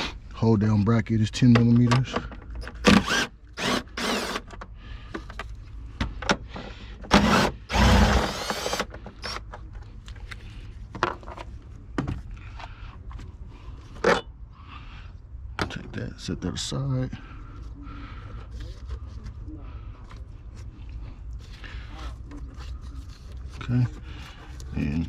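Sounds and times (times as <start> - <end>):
tool whirring: 2.6 - 4.5, 7.1 - 9.4.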